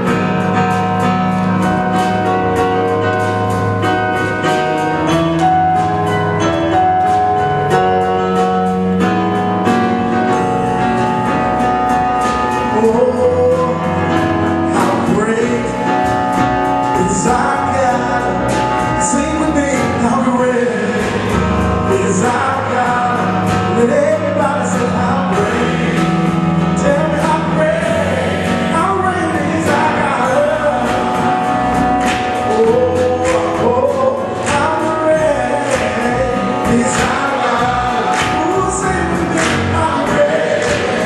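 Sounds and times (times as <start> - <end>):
gospel singing: 9.6 - 41.0.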